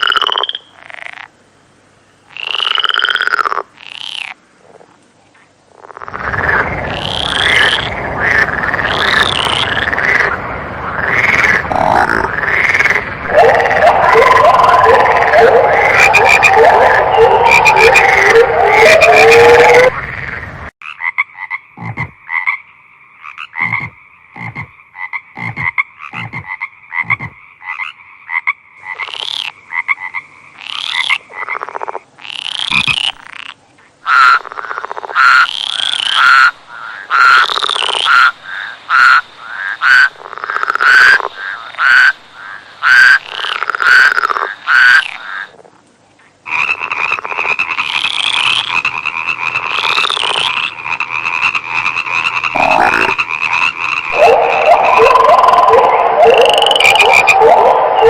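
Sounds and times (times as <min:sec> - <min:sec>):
frogs sharp loud calls: 0:00.0 - 0:01.3, 0:02.3 - 0:04.9, 0:05.7 - 0:58.0
frogs trilling chorus: 0:00.0 - 0:01.3, 0:02.3 - 0:04.9, 0:05.7 - 0:58.0
frogs croaking low: 0:00.0 - 0:58.0.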